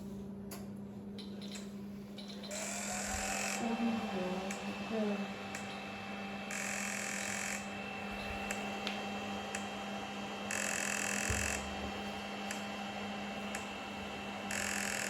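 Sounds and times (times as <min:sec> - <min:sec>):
steady low hum: 0:00.0 - 0:15.0
buzzing signal: 0:06.5 - 0:07.7, 0:10.5 - 0:11.7, 0:14.5 - 0:15.0.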